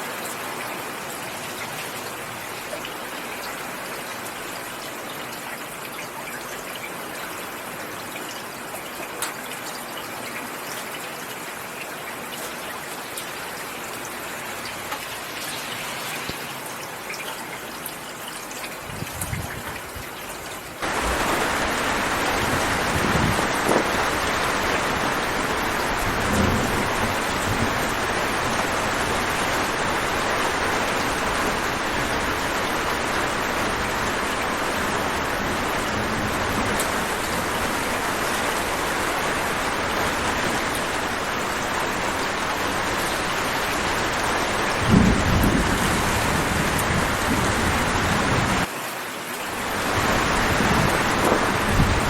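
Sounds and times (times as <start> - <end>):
heavy rain pouring: 0.0 - 52.0
low thunder rumbles: 20.8 - 37.9, 44.7 - 48.7, 49.9 - 52.0.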